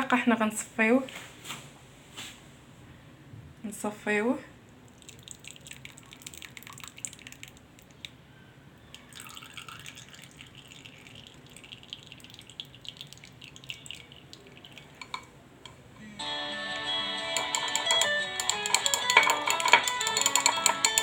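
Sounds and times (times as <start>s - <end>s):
syrup dripping through a strainer: 4.8s - 8.2s, 9.0s - 15.3s, 17.4s - 21.0s.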